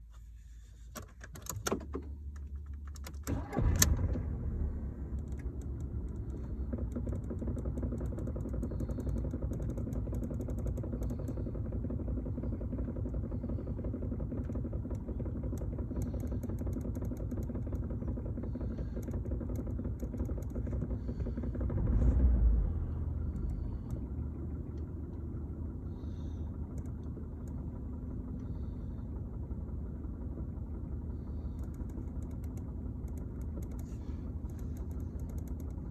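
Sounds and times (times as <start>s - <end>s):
car engine starting and idling: 0.0s - 35.9s
key starter clicks: 1.0s - 11.4s, 14.4s - 17.9s, 18.8s - 21.0s, 31.6s - 35.8s.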